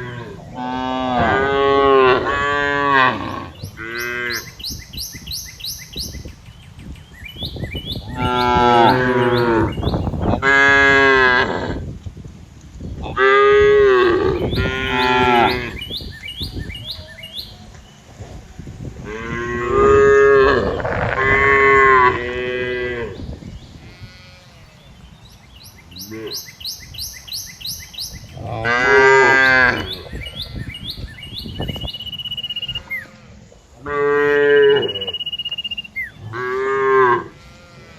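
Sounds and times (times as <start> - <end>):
cattle mooing: 0.0 - 4.5, 28.4 - 30.1, 32.8 - 35.2.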